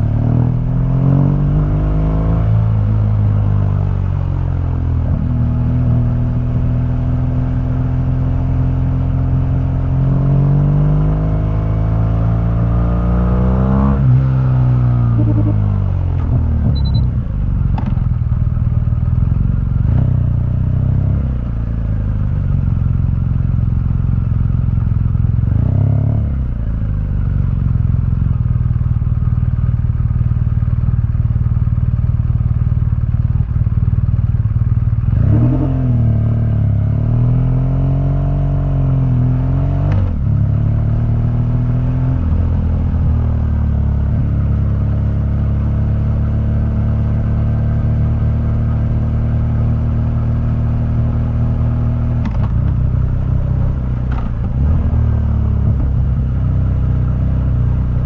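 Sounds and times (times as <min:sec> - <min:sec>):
motorcycle engine revving: 0:09.5 - 0:17.0, 0:35.0 - 0:40.4.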